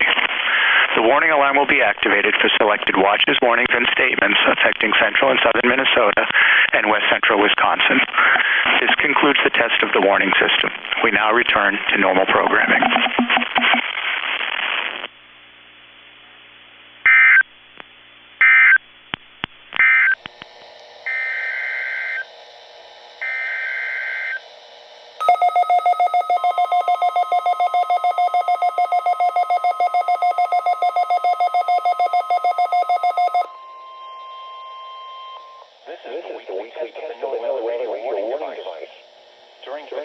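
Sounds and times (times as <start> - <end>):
rapidly pulsing electronic alarm tone: 19.8 - 40.0
warbling digital data bursts: 21.0 - 40.0
faint steady tone: 23.1 - 40.0.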